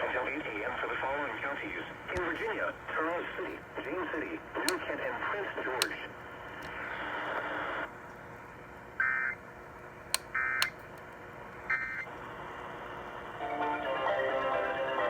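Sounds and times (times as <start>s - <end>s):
radio hiss: 0.0s - 7.9s.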